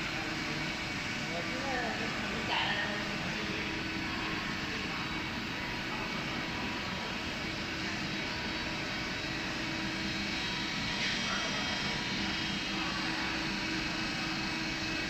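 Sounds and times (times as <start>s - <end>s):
constant hum tone: 0.0s - 15.0s
machine tools running: 0.0s - 15.0s.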